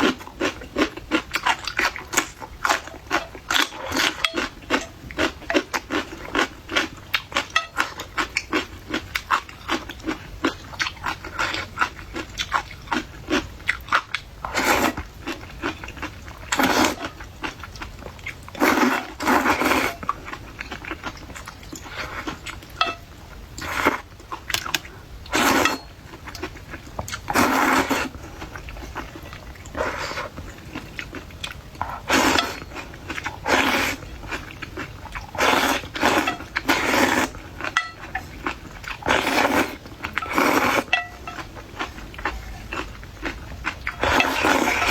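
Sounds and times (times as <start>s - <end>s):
crisp crunching while eating: 0.0s - 44.9s.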